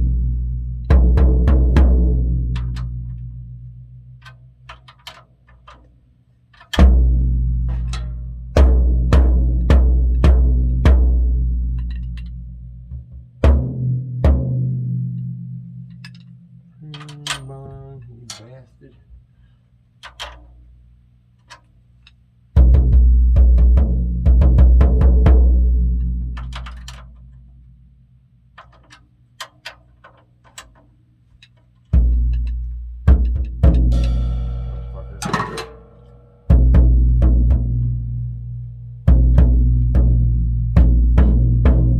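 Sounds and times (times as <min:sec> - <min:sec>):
low drum hits ringing: 0:32.0 - 0:38.0.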